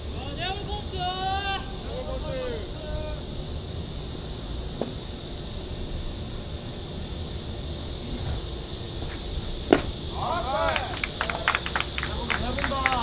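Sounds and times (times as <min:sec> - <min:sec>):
insects chirping: 0:00.0 - 0:13.0
outdoor background noise: 0:00.0 - 0:13.0
sharp knock: 0:09.7 - 0:10.0.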